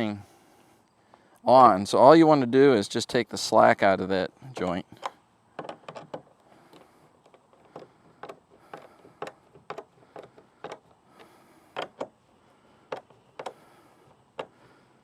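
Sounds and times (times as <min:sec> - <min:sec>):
socket ratchet clicking: 0:05.0 - 0:12.2, 0:12.9 - 0:13.6.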